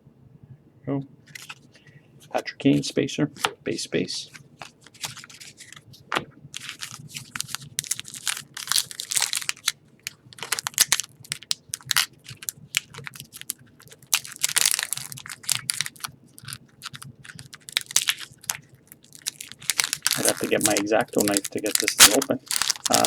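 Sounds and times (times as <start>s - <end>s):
foil wrapper crinkling and tearing: 1.3s - 1.6s, 4.3s - 5.8s, 6.6s - 23.0s.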